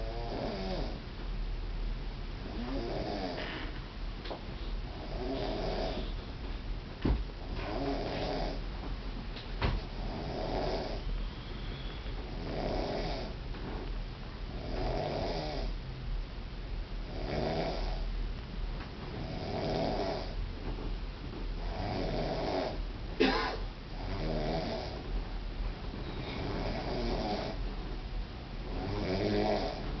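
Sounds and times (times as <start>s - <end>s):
woman snoring: 0.0s - 1.0s, 2.4s - 3.7s, 4.9s - 6.1s, 7.6s - 8.6s, 10.0s - 13.4s, 14.6s - 15.8s, 17.1s - 18.0s, 19.2s - 20.4s, 21.6s - 23.4s, 24.0s - 25.0s, 26.2s - 27.6s, 28.7s - 29.8s.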